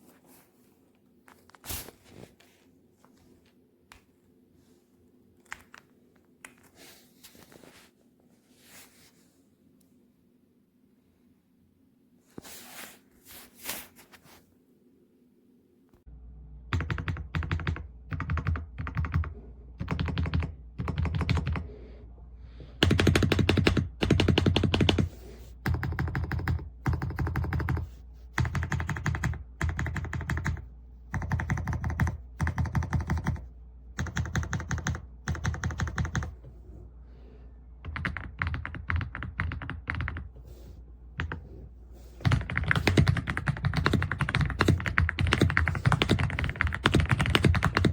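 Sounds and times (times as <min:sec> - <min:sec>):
typing on mechanical keyboard: 0:16.7 - 0:21.7, 0:22.8 - 0:33.4, 0:34.0 - 0:36.4, 0:37.8 - 0:40.3, 0:41.2 - 0:41.4, 0:42.2 - 0:47.9.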